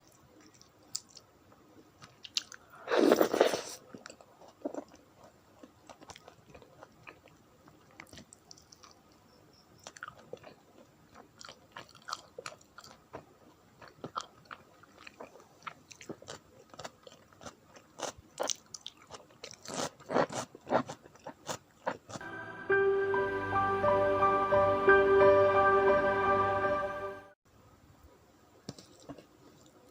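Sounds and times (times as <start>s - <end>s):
chewing with wet mouth clicks: 0.0s - 1.3s, 2.0s - 2.6s, 3.9s - 9.2s, 9.8s - 22.2s.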